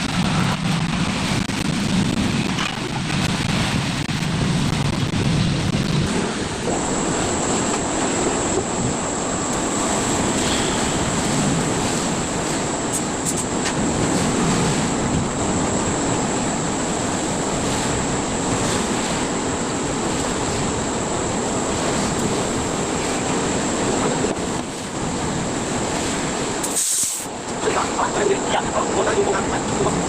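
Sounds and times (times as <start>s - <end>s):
machine whining: 6.7s - 14.0s.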